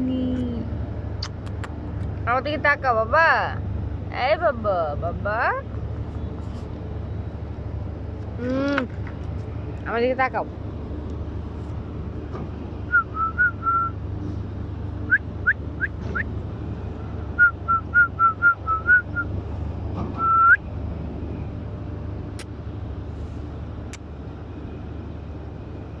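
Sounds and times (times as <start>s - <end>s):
steady low hum: 0.0s - 26.0s
person whistling quick chirps: 20.2s - 20.6s.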